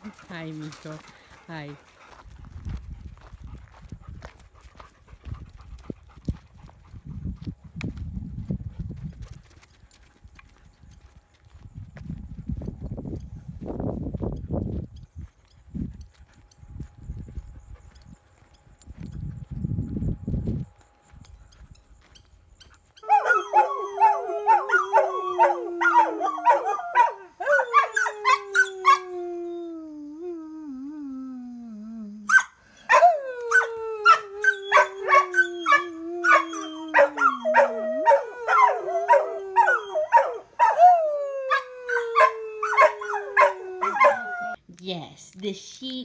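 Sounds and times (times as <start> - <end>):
dogs yipping: 23.0 - 29.0, 32.3 - 44.6
dogs howling: 23.0 - 44.6.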